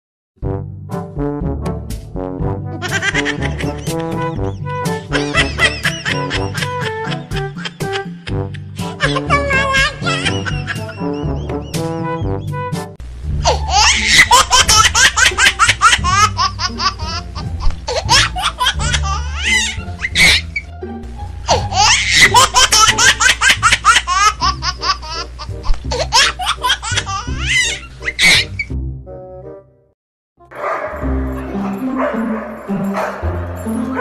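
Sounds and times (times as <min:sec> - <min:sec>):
background music with bass line: 0:00.4 - 0:29.8
people laughing: 0:02.8 - 0:08.0, 0:09.0 - 0:12.0, 0:13.7 - 0:17.2, 0:21.8 - 0:24.9.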